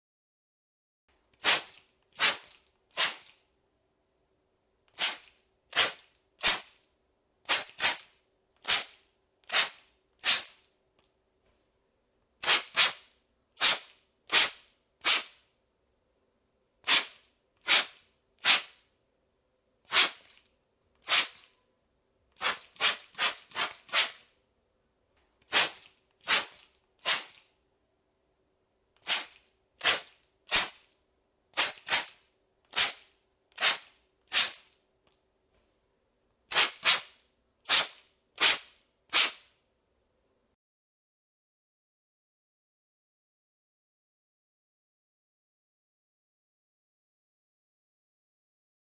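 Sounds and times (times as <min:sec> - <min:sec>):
spray bottle squirting water: 0:01.4 - 0:03.4, 0:04.9 - 0:06.8, 0:07.5 - 0:10.6, 0:12.4 - 0:15.4, 0:16.9 - 0:18.8, 0:19.9 - 0:20.4, 0:21.0 - 0:21.6, 0:22.4 - 0:24.3, 0:25.5 - 0:27.5, 0:29.0 - 0:30.9, 0:31.6 - 0:34.6, 0:36.5 - 0:37.1, 0:37.7 - 0:39.5.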